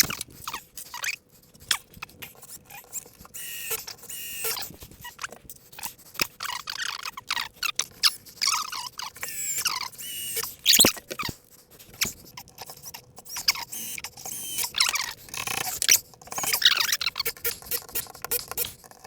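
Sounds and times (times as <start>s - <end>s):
short high squeaks: 0.0s - 11.4s, 12.0s - 18.7s.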